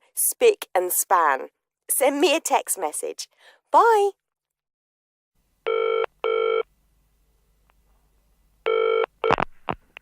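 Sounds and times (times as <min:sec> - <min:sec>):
telephone ringing: 0:05.7 - 0:06.6, 0:08.7 - 0:09.4.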